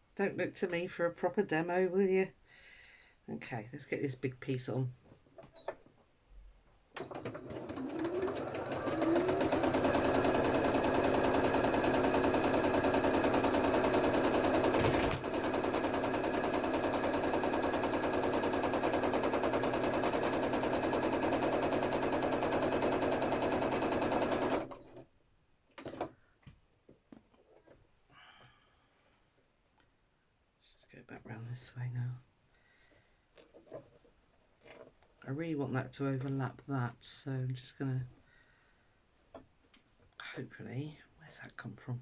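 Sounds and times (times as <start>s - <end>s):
sewing machine stitching: 7.0s - 25.0s.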